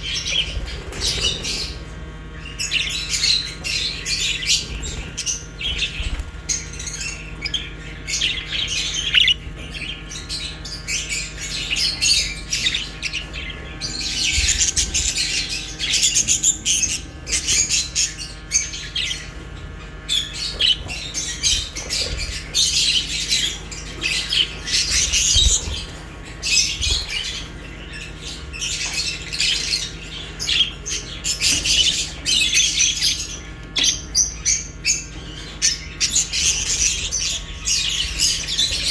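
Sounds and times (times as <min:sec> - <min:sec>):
small parrots chirping and chattering: 0:00.0 - 0:38.9
bird squawks: 0:02.5 - 0:19.4.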